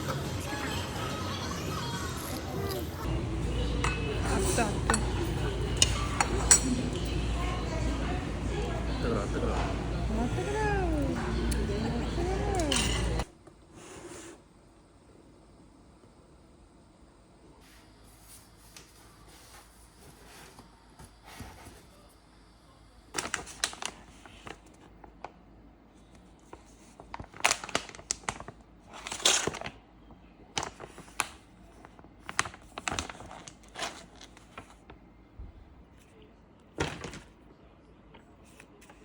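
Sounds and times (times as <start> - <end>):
packaging crinkling and tearing: 23.2 - 24.6, 27.0 - 29.8, 32.2 - 34.9.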